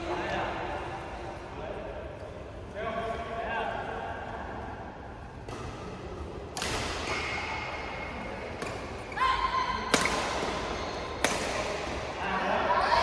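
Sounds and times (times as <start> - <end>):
badminton racket striking shuttlecock: 9.9 - 12.1.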